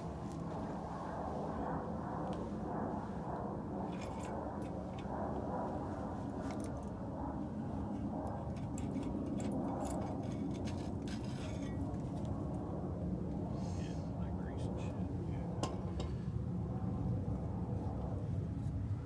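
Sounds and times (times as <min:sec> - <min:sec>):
steady low rumble: 0:00.0 - 0:19.0.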